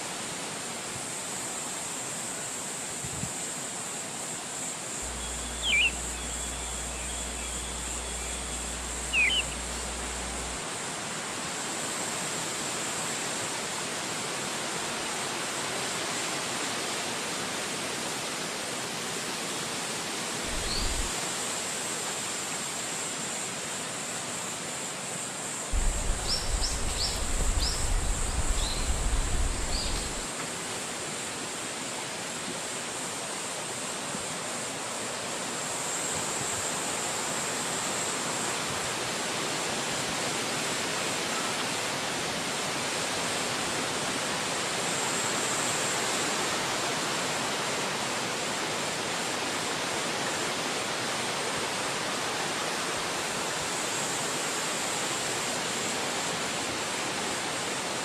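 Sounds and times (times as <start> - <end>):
wind rushing through trees: 0.0 - 21.6, 25.7 - 32.8
short bird chirps: 5.1 - 10.5.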